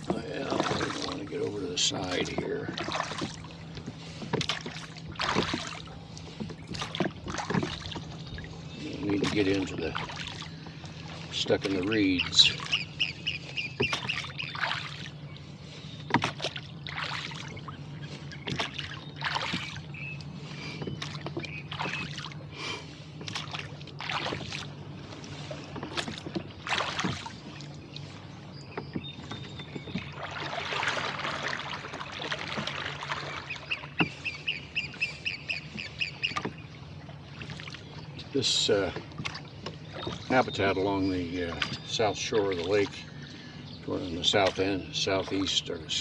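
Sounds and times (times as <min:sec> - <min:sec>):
oars splashing: 0:00.0 - 0:46.0
reeds brushing against hull: 0:00.0 - 0:46.0
water bird calling: 0:00.0 - 0:46.0.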